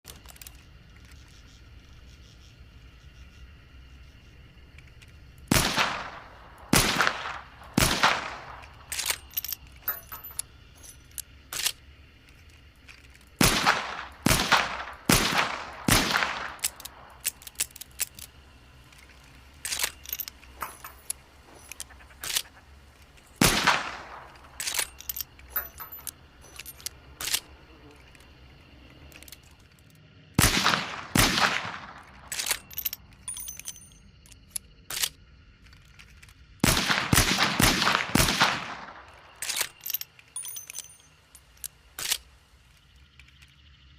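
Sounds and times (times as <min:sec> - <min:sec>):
pistol shots with ring: 0:05.5 - 0:09.2, 0:13.4 - 0:17.0, 0:23.4 - 0:26.1, 0:30.4 - 0:32.7, 0:36.6 - 0:39.7
metallic clicks and rattles: 0:08.5 - 0:13.4, 0:16.3 - 0:23.4, 0:24.1 - 0:28.3, 0:32.2 - 0:36.4, 0:39.1 - 0:43.6.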